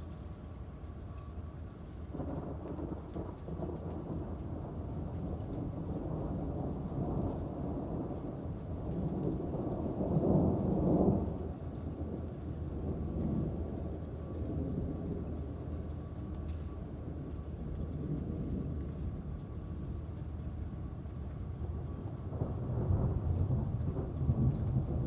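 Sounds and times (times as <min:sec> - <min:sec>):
steady rain: 0:00.0 - 0:25.0
rolling thunder: 0:02.1 - 0:25.0.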